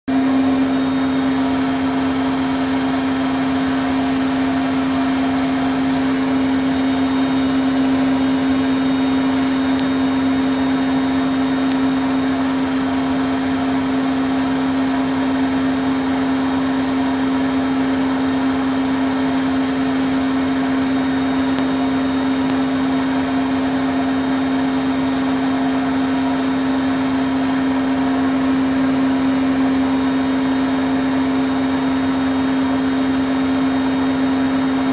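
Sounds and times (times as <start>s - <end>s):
washing machine spinning: 0.1s - 34.9s.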